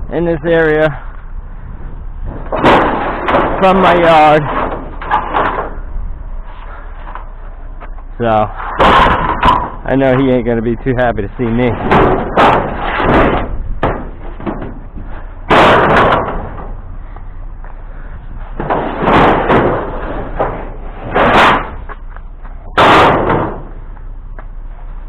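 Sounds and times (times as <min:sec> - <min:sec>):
loud bangs and slams: 0:02.2 - 0:05.9, 0:08.3 - 0:10.5, 0:11.4 - 0:17.0, 0:17.9 - 0:22.0, 0:22.6 - 0:23.9
quiet rattling and knocking: 0:07.0 - 0:24.5.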